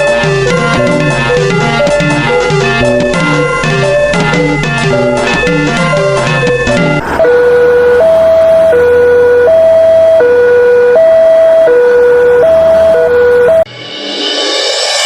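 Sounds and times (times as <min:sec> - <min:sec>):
music: 0:00.0 - 0:07.1, 0:13.6 - 0:15.0
two-tone electronic siren: 0:00.0 - 0:13.7.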